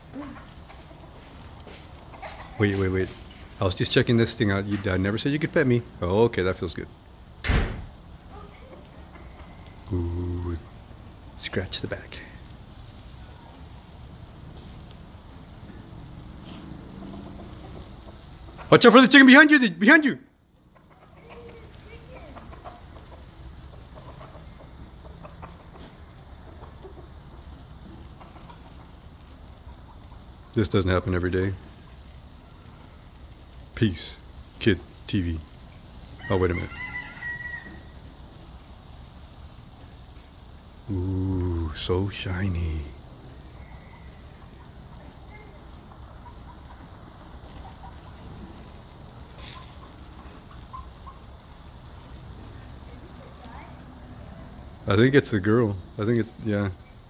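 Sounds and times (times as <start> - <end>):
rustling hiss: 0.0 - 57.0
chicken clucking: 0.1 - 3.4, 8.7 - 10.0, 16.4 - 19.0, 20.6 - 30.6, 43.4 - 51.6.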